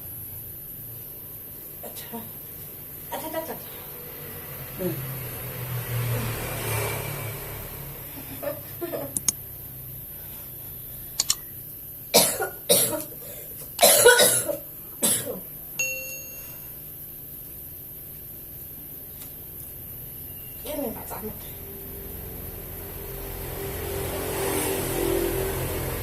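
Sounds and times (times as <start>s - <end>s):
person coughing: 12.2s - 13.1s, 13.8s - 15.4s
brief tone ringing: 15.8s - 16.8s.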